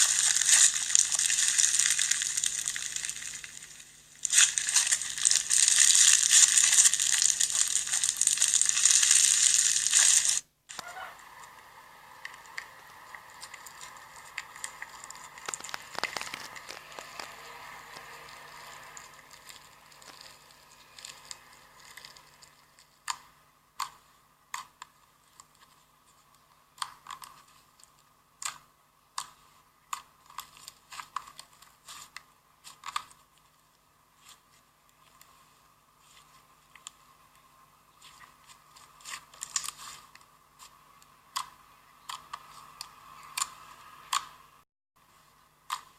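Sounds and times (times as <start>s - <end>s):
slime crackling: 0.0s - 10.9s, 12.2s - 33.5s, 34.1s - 44.4s
slime squishing: 0.0s - 10.9s, 12.2s - 45.9s
sticky pops and clicks: 12.3s - 20.4s.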